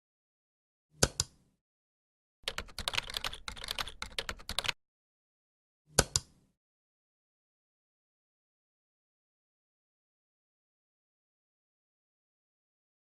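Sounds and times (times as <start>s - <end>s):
keyboard key clicks: 6.0s - 6.3s.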